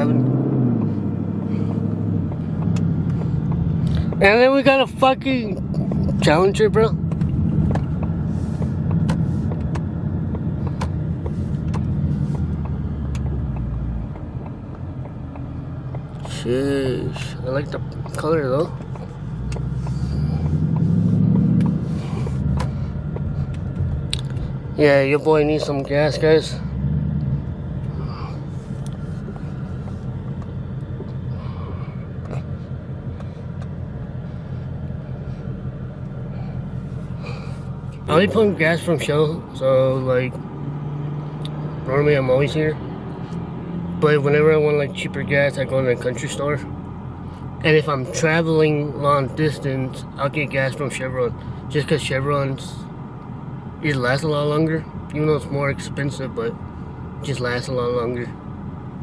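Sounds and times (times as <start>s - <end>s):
car engine low hum from cabin: 0.0s - 59.0s
sharp clicks: 2.3s - 4.2s.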